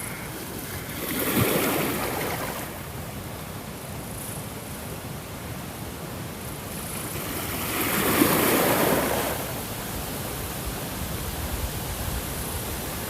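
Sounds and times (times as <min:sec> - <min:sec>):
wave crashing: 0:00.0 - 0:03.0, 0:06.7 - 0:09.8
ocean surf: 0:00.0 - 0:13.0.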